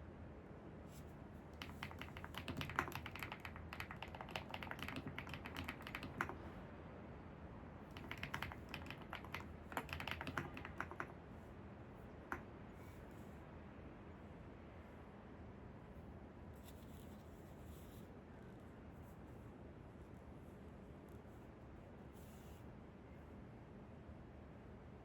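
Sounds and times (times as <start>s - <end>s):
low background hum: 0.0s - 25.0s
keyboard typing: 1.6s - 6.6s, 7.9s - 11.2s.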